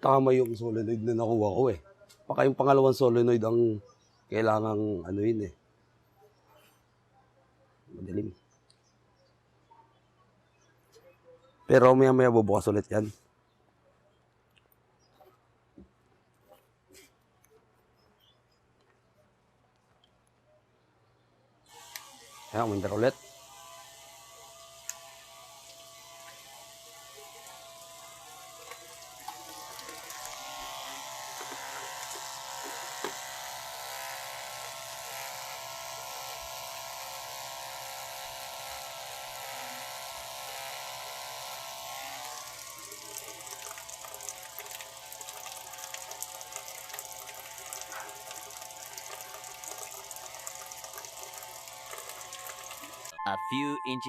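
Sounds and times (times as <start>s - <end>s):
pump motor whining: 21.7s - 53.2s
water running into washing machine: 28.6s - 32.5s, 42.4s - 53.1s.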